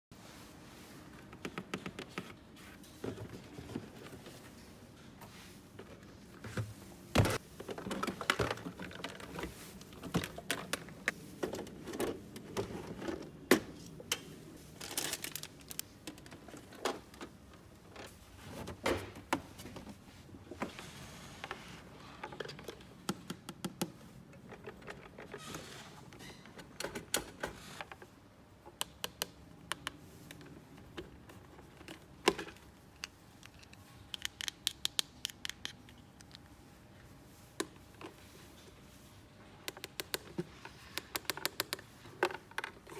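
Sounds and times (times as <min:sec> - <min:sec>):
plastic parts clicking: 0:31.8 - 0:36.4.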